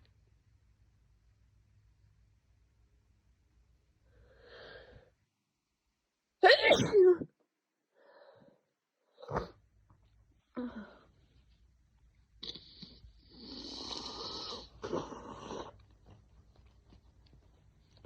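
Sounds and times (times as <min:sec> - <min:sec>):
person sneezing: 0:06.4 - 0:07.2.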